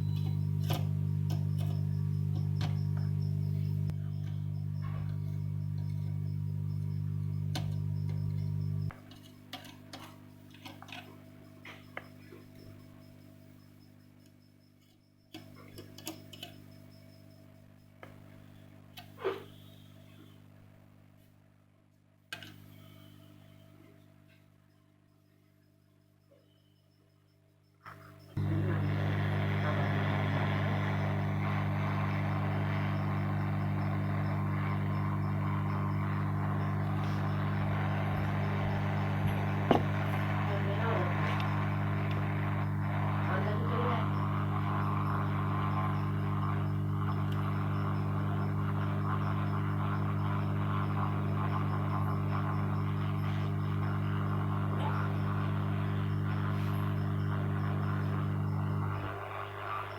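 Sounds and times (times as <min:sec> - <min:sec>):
hot air blower fan hum: 0:00.0 - 0:09.0, 0:28.4 - 0:59.9.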